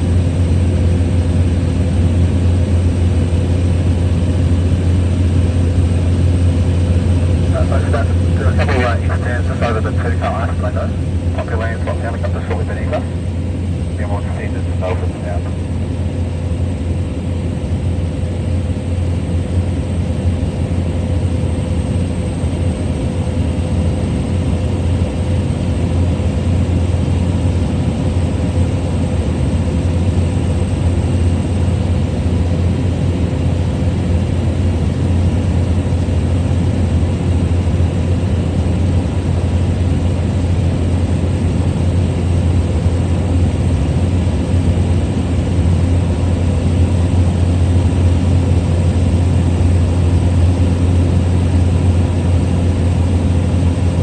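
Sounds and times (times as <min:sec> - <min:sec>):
constant hum: 0:00.0 - 0:24.2
propeller plane engine drone: 0:00.0 - 0:54.0.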